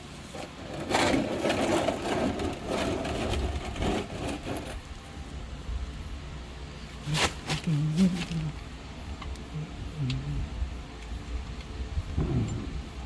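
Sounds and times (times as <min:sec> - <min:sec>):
metal tools clattering: 0:00.4 - 0:05.0.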